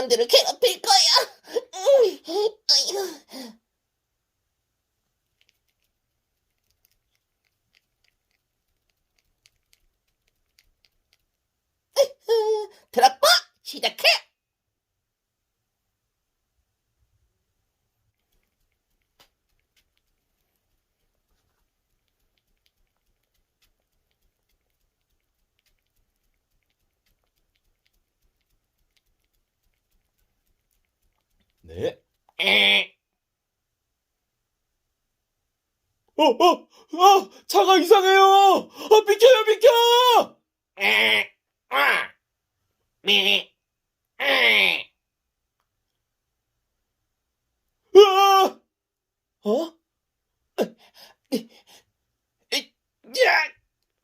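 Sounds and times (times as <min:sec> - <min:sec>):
faint small clicks: 0:05.3 - 0:11.4, 0:18.1 - 0:32.4.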